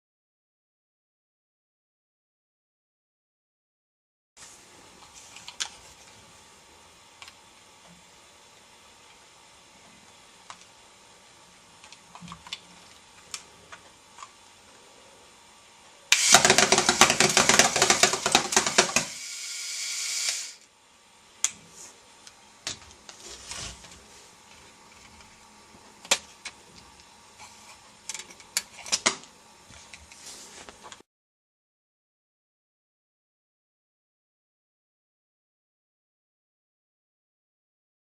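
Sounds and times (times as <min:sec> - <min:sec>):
fast plastic clattering: 0:16.2 - 0:19.1.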